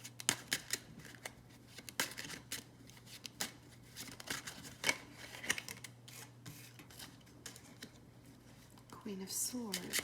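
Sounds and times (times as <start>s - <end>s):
cards being shuffled: 0.2s - 7.9s.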